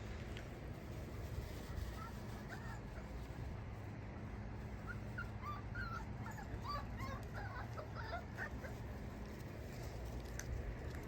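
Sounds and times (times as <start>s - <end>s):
puppies whimpering and yipping: 1.4s - 3.6s, 4.6s - 9.7s.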